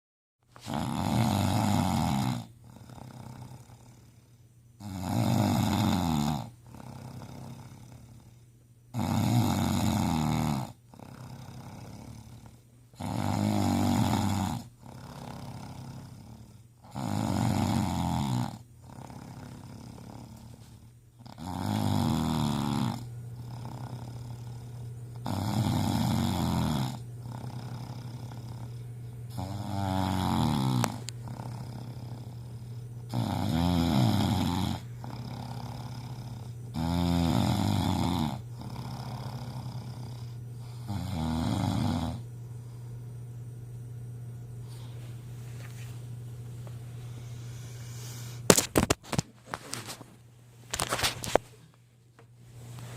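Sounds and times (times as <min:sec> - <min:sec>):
man snoring loudly: 0:00.6 - 0:20.6, 0:21.2 - 0:42.3
quiet breath: 0:46.9 - 0:48.5.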